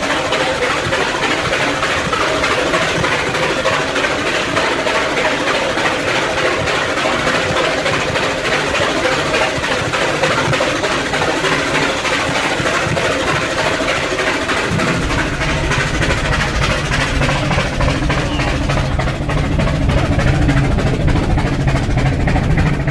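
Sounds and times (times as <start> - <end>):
steam locomotive exhaust puffing: 0.0 - 22.9
deep rumble: 14.1 - 22.9.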